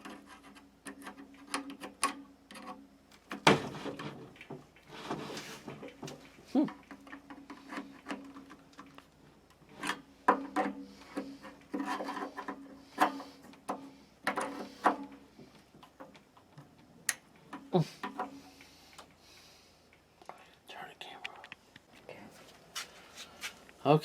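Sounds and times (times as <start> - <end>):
clicks and knocks on metal: 0.0 - 18.6.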